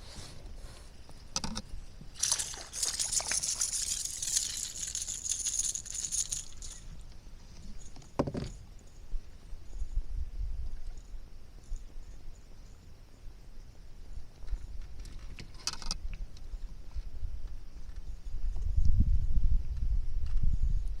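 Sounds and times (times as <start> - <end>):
wind rumbling on microphone: 1.6 - 12.2, 14.2 - 21.0
water sloshing and trickling: 2.1 - 7.0.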